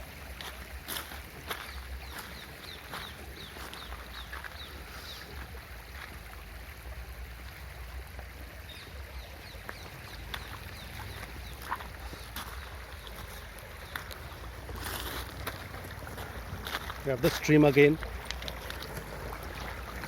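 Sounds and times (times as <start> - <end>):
vehicle engine and road rumble: 9.7 - 20.0.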